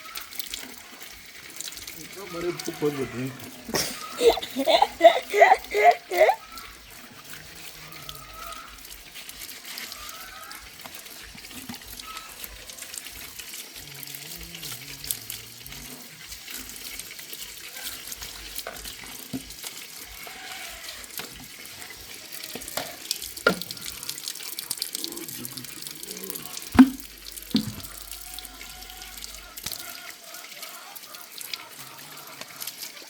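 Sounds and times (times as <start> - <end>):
tap water running: 0.0 - 33.0.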